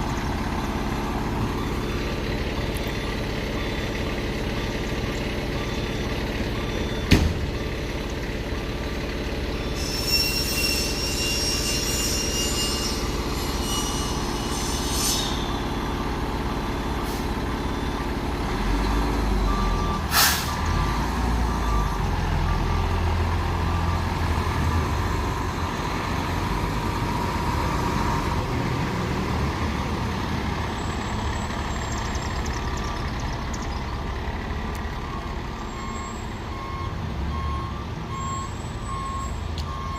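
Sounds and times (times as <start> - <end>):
diesel truck engine idling: 0.0 - 9.8, 15.5 - 39.9
air-brake release burst: 20.1 - 20.7.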